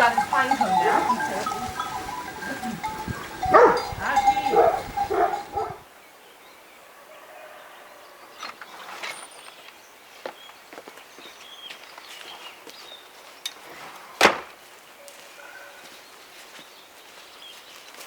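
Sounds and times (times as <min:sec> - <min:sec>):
footsteps on wet ground: 0:00.0 - 0:05.7, 0:10.1 - 0:18.0.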